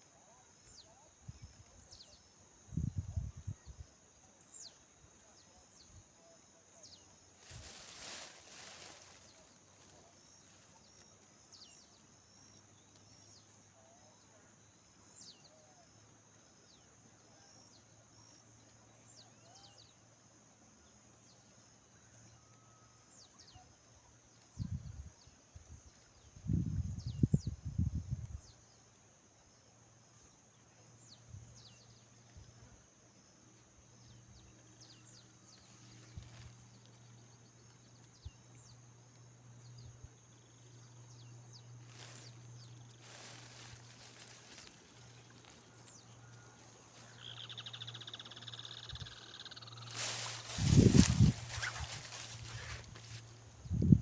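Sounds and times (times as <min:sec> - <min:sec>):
insects droning: 0:00.1 - 0:54.0
short falling bird chirps: 0:47.1 - 0:53.3.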